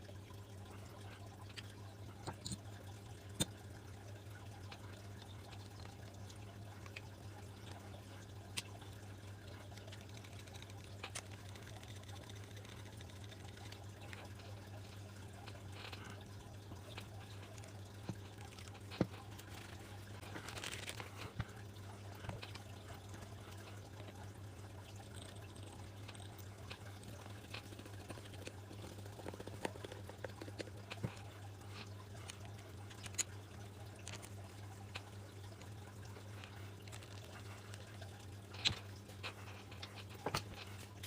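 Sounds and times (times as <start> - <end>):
steady low hum: 0.0 - 41.0
small parts clicking and tapping: 1.0 - 41.0
rustle of small parts: 9.6 - 22.8, 25.1 - 41.0.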